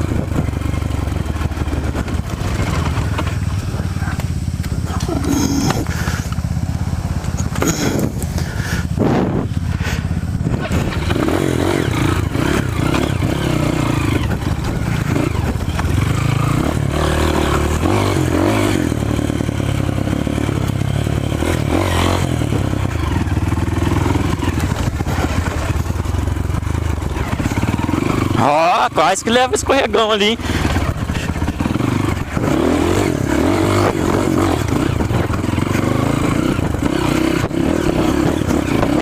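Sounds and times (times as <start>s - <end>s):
motorcycle engine revving: 0.0s - 39.0s.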